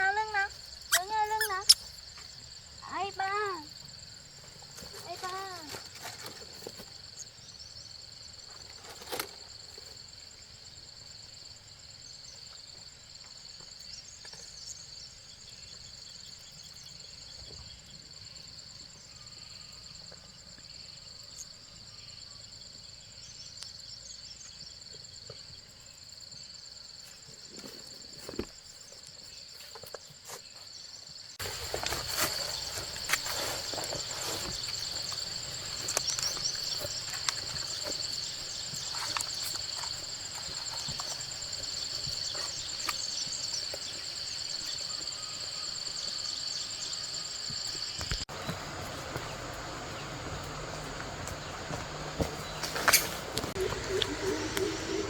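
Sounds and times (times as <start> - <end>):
insects trilling: 0.0 - 55.0.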